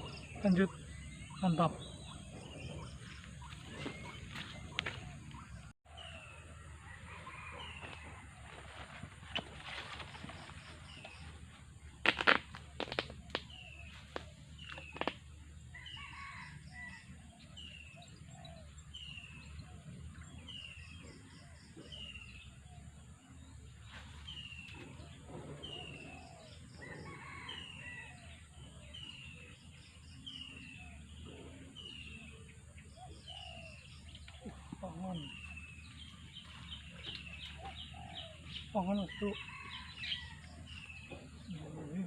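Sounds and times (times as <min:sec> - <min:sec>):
bird calling: 0:00.0 - 0:06.4
outdoor background noise: 0:00.0 - 0:42.0.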